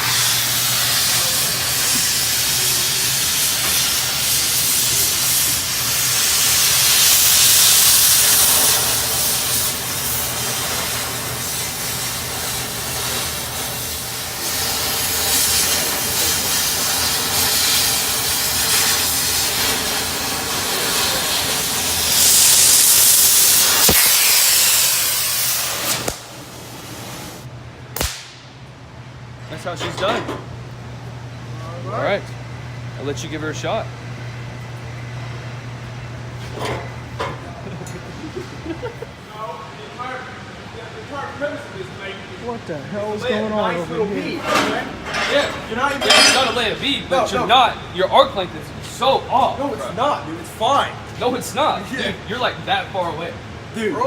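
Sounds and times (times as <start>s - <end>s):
torch flame hissing: 0.0s - 28.4s.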